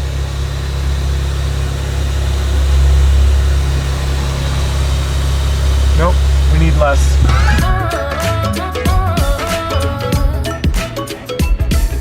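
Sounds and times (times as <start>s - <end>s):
car engine idling: 0.0s - 8.0s.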